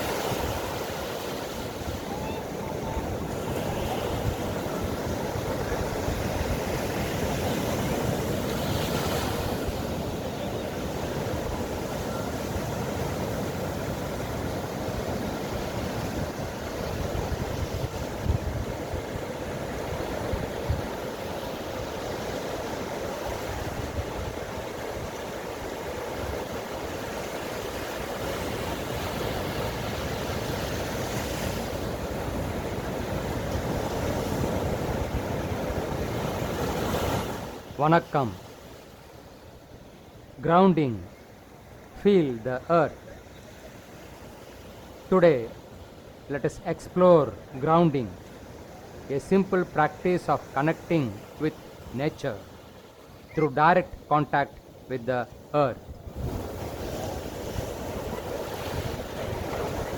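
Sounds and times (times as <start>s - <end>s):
ocean surf on beach: 0.0s - 59.9s
wind rumble on microphone: 15.2s - 21.1s, 55.8s - 59.9s.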